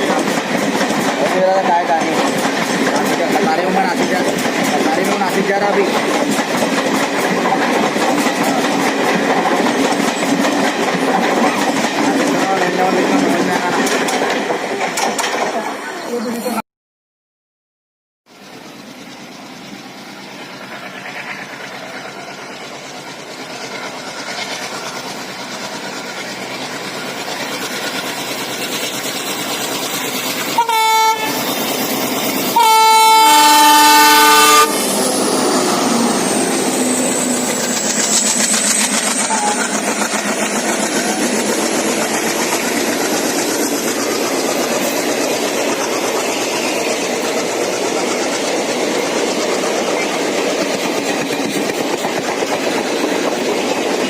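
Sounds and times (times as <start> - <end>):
train wheels clattering: 0.0 - 15.7, 34.7 - 54.0
diesel locomotive engine chugging: 0.0 - 16.4, 18.3 - 54.0
multi-tone horn blast: 30.6 - 31.4, 32.5 - 34.9.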